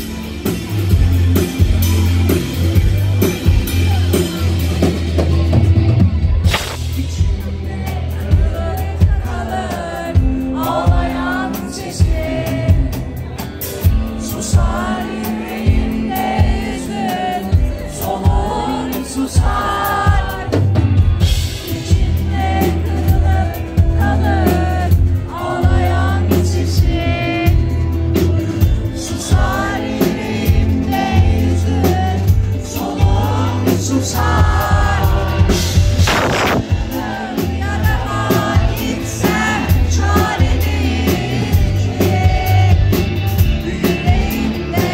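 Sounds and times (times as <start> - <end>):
rock band playing live: 0.0 - 44.9
audience singing along: 6.2 - 44.9.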